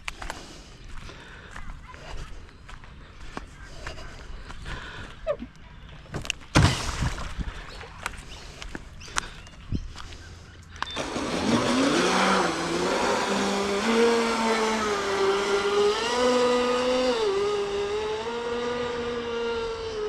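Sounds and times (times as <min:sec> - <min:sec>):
electric boat motor whine: 0:10.8 - 0:20.0.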